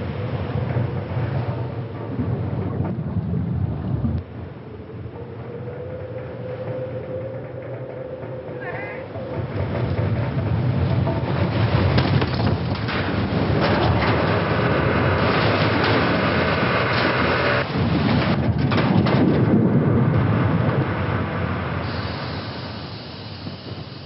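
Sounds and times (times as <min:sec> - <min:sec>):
dense rumble: 0:00.0 - 0:24.0
rushing noise: 0:00.0 - 0:24.0.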